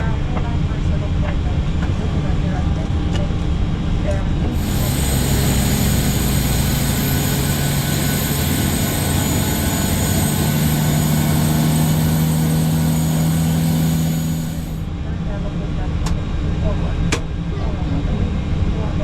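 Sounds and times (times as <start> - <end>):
low hum: 4.4 - 15.1
high steady whine: 4.5 - 14.9.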